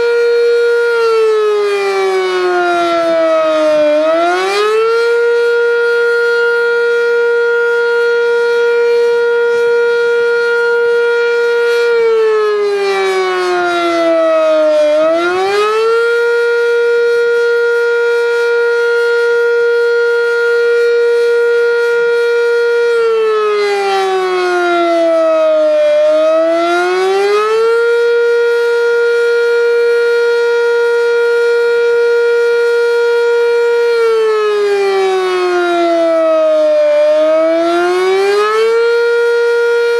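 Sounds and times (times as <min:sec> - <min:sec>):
fire siren wailing: 0:00.0 - 0:39.9.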